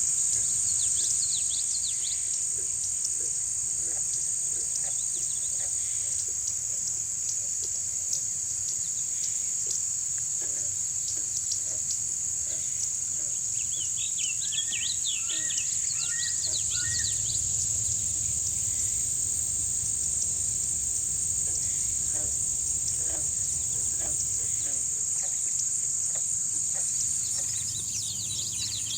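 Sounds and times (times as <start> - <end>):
high-pitched insect drone: 14.7 - 28.9
low frog calls: 15.2 - 25.0.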